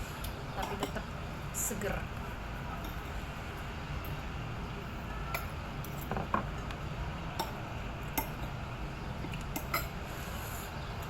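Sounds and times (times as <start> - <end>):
low background hum: 0.0 - 11.0
tableware clinking: 5.3 - 6.7, 9.5 - 10.0.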